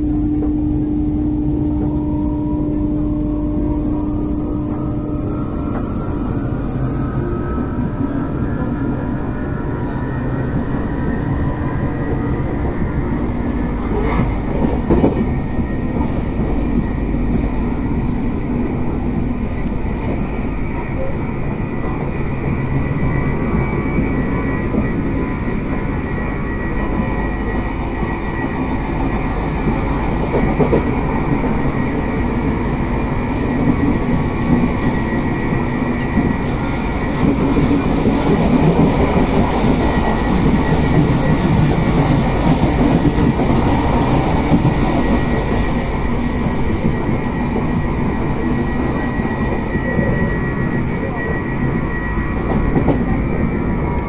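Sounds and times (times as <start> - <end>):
faint high tone: 0.0 - 6.3
train rolling and traction noise: 0.0 - 54.0.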